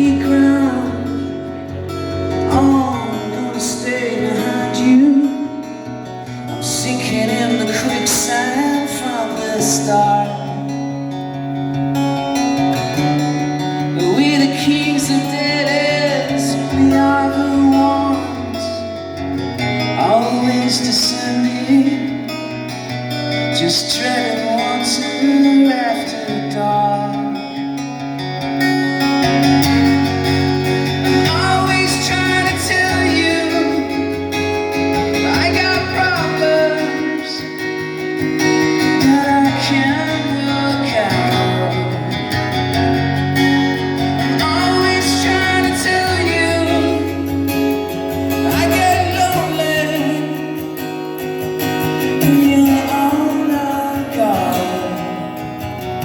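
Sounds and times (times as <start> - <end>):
person singing: 0.0 - 11.3, 13.0 - 27.8, 30.3 - 51.3, 52.0 - 56.0
guitars: 0.0 - 56.0.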